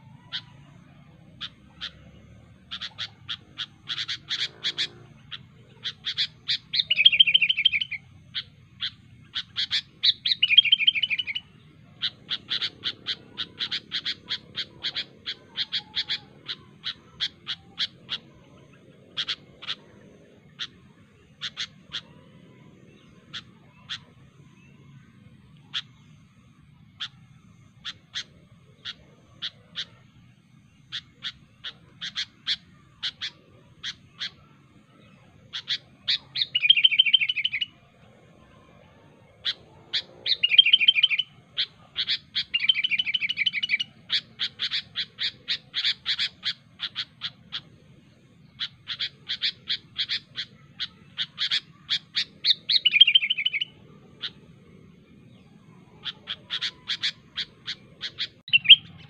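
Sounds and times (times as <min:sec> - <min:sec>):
bird warbled phrases: 0:01.4 - 0:22.5, 0:30.9 - 0:34.6, 0:35.2 - 0:47.8, 0:48.5 - 0:54.9, 0:55.5 - 0:59.0.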